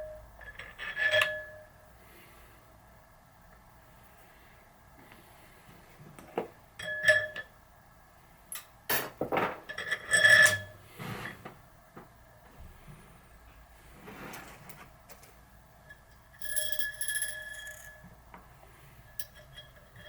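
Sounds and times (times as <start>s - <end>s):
small metal tools clinking: 15.9s - 18.1s.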